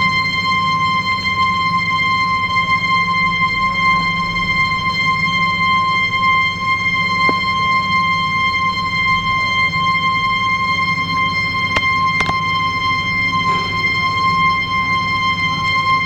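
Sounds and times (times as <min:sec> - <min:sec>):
click: 0:11.7 - 0:12.4.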